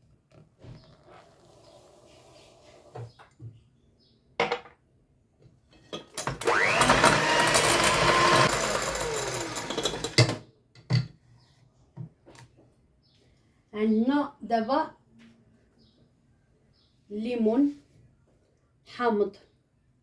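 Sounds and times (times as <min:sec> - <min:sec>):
electric mixer whirring: 0:06.2 - 0:10.4
utensils knocking on bowl: 0:06.8 - 0:10.4.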